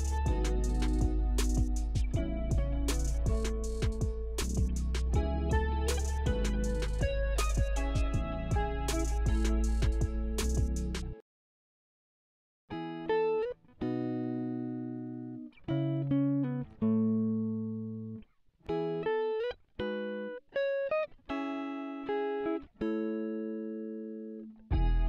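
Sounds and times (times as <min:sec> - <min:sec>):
backing band and bass: 0:00.0 - 0:11.2
clean guitar plucking: 0:00.0 - 0:11.2, 0:12.7 - 0:25.0.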